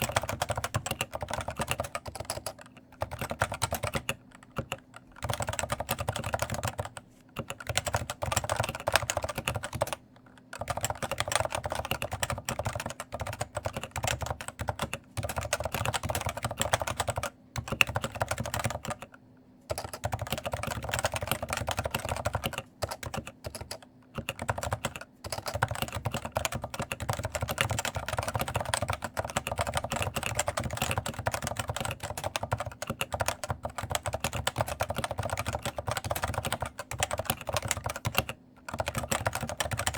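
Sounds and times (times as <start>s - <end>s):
fast keyboard typing: 0.0s - 39.9s
keycaps rattling: 19.7s - 39.9s.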